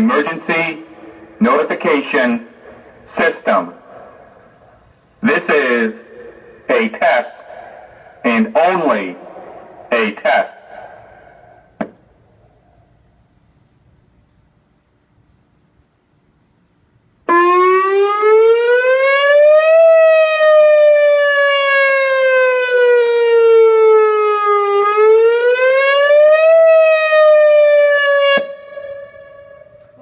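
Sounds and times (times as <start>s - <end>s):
siren wailing: 0.0s - 11.9s, 17.3s - 30.0s
faint steady tone: 0.0s - 17.3s.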